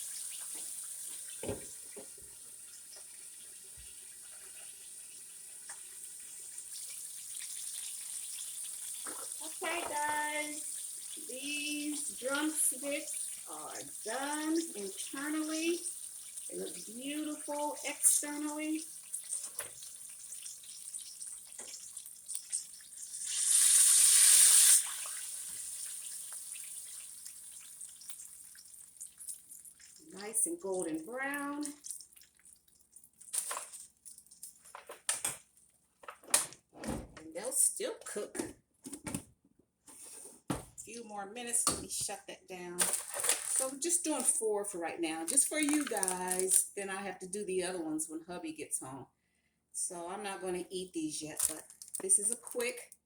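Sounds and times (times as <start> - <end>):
chicken frying in oil: 0.0 - 33.6.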